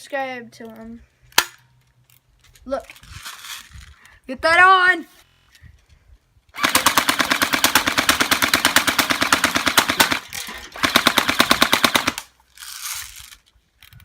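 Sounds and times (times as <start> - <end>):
airsoft rifle firing full auto: 6.6 - 12.3.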